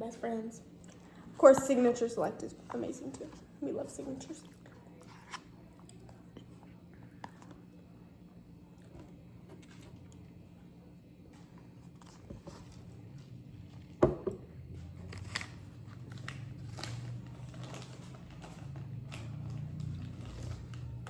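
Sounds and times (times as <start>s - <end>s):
crunching and chewing: 4.4s - 7.7s, 8.6s - 10.6s, 14.7s - 21.0s.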